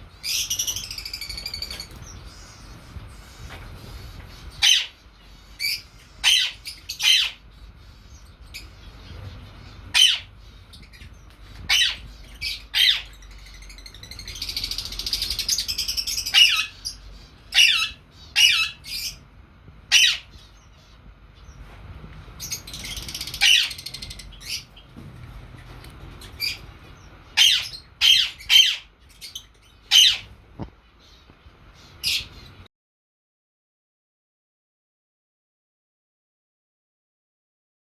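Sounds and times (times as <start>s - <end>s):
birds softly chattering: 0.0s - 32.7s
lovebirds squawking: 0.2s - 19.3s, 19.9s - 21.0s, 22.4s - 24.9s, 25.6s - 30.4s, 31.8s - 32.6s.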